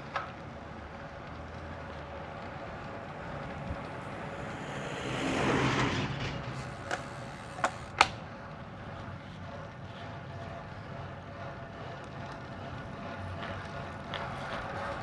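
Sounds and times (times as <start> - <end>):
bicycle riding noise: 0.0 - 9.1.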